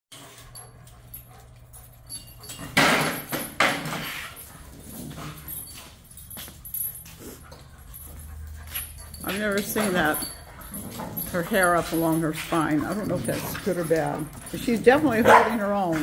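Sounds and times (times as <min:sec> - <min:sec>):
dogs scuffling: 0:00.2 - 0:16.0
dogs growling: 0:07.0 - 0:16.0.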